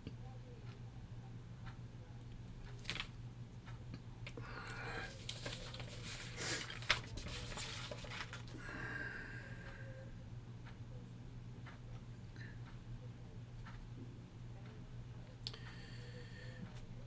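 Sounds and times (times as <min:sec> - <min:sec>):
low electrical hum: 0:00.0 - 0:17.0
wire leads rustling and clicking: 0:02.6 - 0:03.2, 0:04.2 - 0:08.6.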